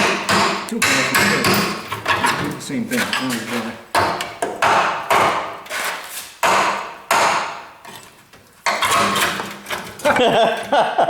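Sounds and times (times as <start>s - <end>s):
hammer striking chisel on metal: 0.0s - 2.3s, 4.0s - 5.6s, 6.4s - 7.7s.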